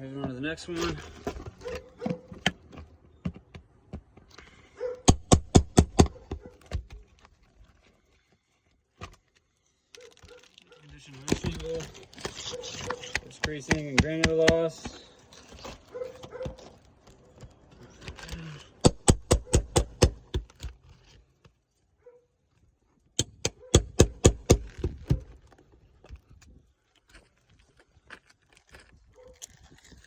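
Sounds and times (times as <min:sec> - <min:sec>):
hammer blows on shingle roof: 0:05.0 - 0:07.0, 0:13.1 - 0:15.1, 0:18.8 - 0:20.8, 0:23.2 - 0:25.4.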